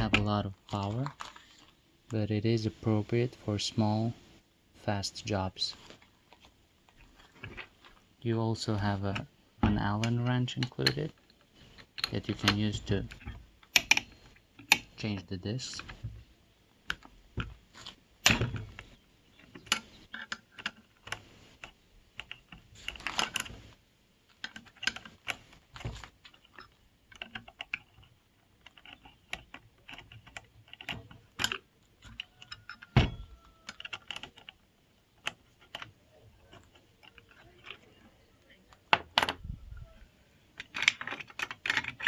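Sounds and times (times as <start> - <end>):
hands handling saw parts: 0.0 - 2.2, 5.7 - 39.6, 40.5 - 42.0.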